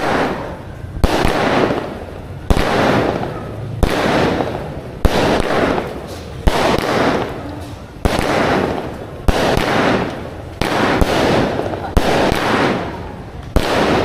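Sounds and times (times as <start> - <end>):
firework bangs: 0.0 - 14.0
firework crackling: 0.0 - 14.0.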